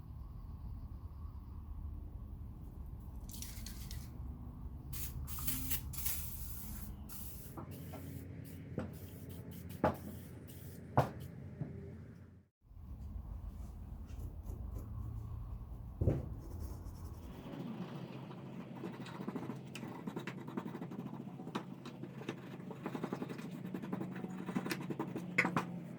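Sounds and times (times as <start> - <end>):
hissing spray bursts: 5.0 - 10.9.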